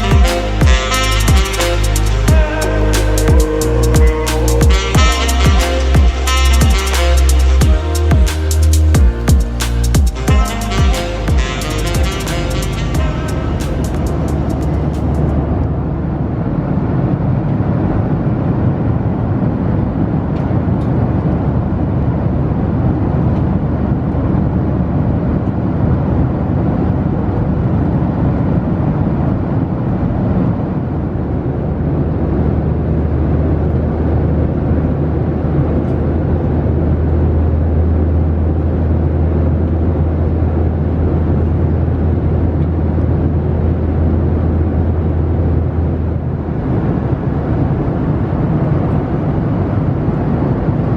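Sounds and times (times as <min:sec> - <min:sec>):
low drone: 0:00.0 - 0:17.4, 0:30.7 - 0:50.9
airflow and jet engine noise: 0:00.0 - 0:50.9.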